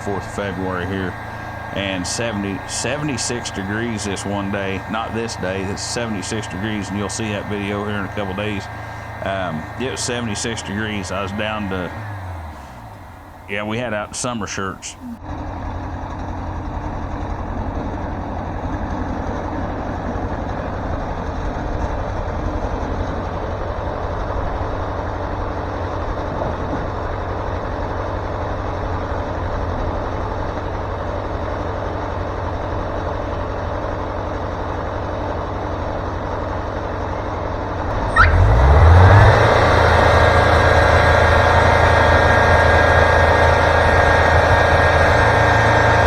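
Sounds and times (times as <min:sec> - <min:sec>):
short rising whine: 0:00.0 - 0:15.3, 0:37.8 - 0:46.0
sawmill engine running: 0:00.0 - 0:46.0.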